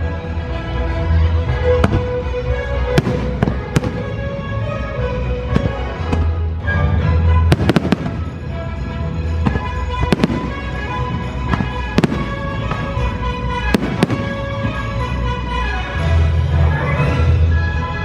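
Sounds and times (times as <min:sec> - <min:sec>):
music soundtrack: 0:00.0 - 0:18.0
fireworks bangs: 0:03.0 - 0:04.2, 0:07.5 - 0:08.4, 0:09.4 - 0:15.0.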